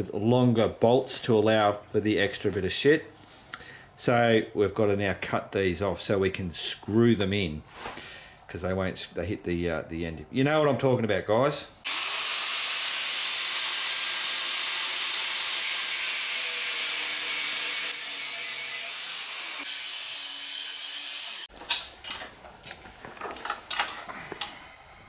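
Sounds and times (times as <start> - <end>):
power tool cutting metal bolts: 11.9 - 22.2.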